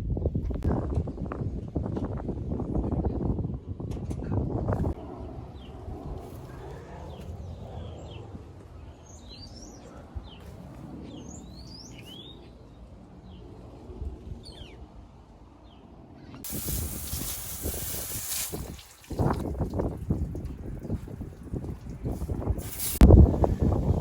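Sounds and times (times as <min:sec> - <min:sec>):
birds chirping: 0:05.0 - 0:14.9
steady hiss: 0:16.5 - 0:19.2, 0:22.6 - 0:23.6.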